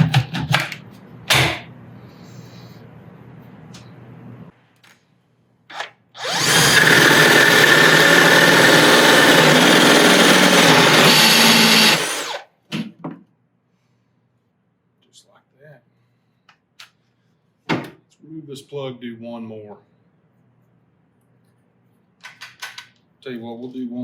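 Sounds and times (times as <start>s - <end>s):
drill with hole saw cutting wood: 5.7s - 12.5s.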